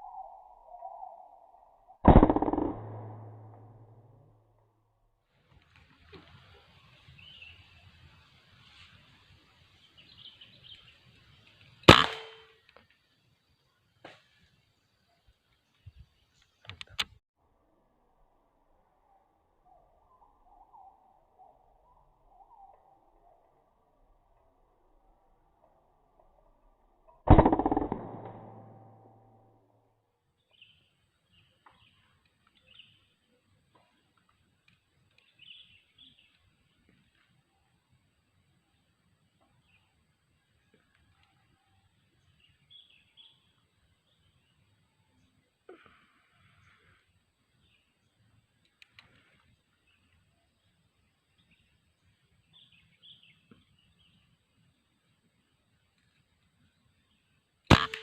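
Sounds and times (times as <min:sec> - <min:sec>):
faint high chirps: 0:00.0 - 0:02.0
bird chirps: 0:00.0 - 0:04.0, 0:18.8 - 0:29.2, 0:30.4 - 0:34.1, 0:35.1 - 0:36.5, 0:38.7 - 0:47.0, 0:49.8 - 0:54.4
air rifle shot: 0:02.1 - 0:04.0, 0:11.9 - 0:12.5, 0:27.3 - 0:29.1, 0:57.7 - 0:58.0.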